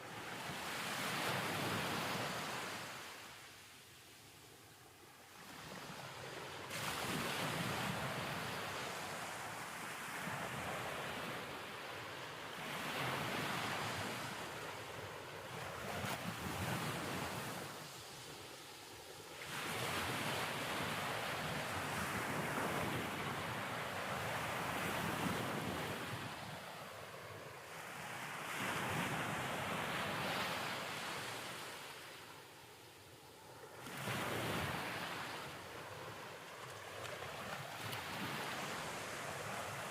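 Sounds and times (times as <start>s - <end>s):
waves breaking: 5.4s - 11.3s, 33.6s - 39.9s.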